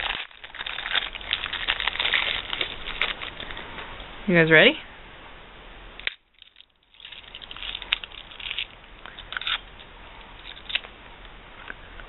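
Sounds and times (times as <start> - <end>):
wrapper and cookie crinkling: 0.0 - 3.7, 6.0 - 10.9.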